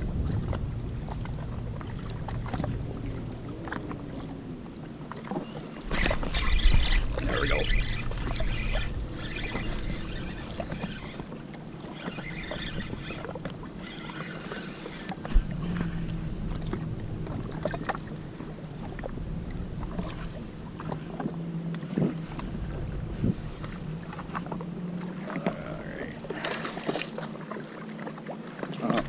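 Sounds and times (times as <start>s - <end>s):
wind noise: 0.0s - 3.1s, 22.0s - 23.8s
water noise: 0.0s - 29.0s
watercraft engine humming: 0.0s - 29.0s.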